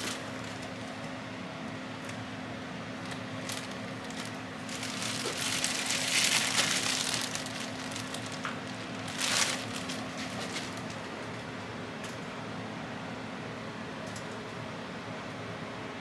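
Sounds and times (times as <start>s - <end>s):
crinkly rustling: 0.0s - 1.0s, 3.0s - 11.5s.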